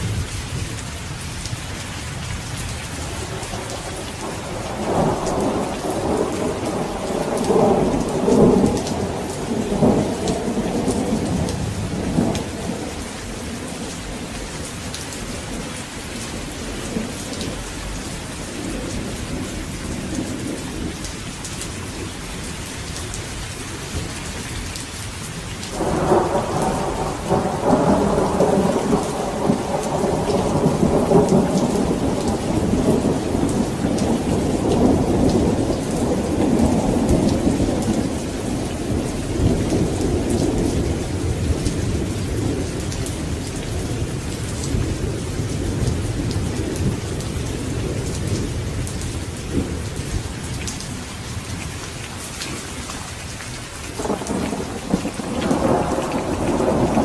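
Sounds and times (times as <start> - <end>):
heavy rain: 0.0 - 57.0
thunder rolling: 3.0 - 15.7, 25.7 - 51.0, 54.0 - 57.0.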